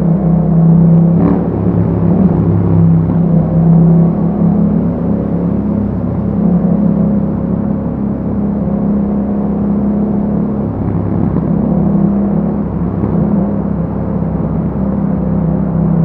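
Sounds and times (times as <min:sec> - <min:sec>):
motorcycle engine running: 0:00.0 - 0:16.0.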